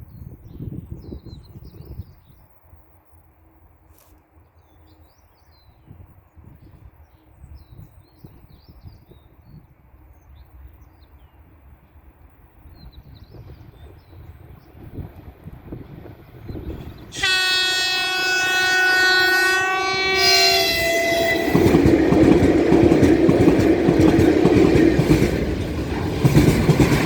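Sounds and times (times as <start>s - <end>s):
wind on microphone: 0.0s - 2.4s, 12.6s - 17.6s.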